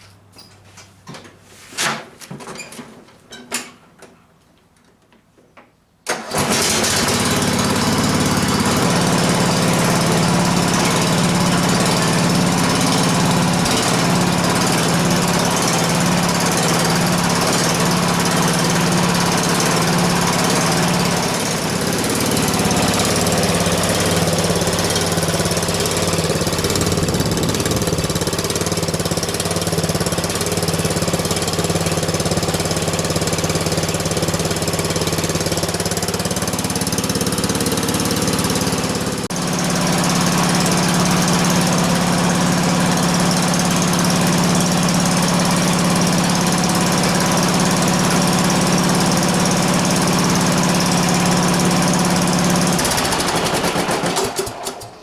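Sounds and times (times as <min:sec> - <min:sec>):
lawn tractor engine with loud exhaust: 0:06.1 - 0:55.0.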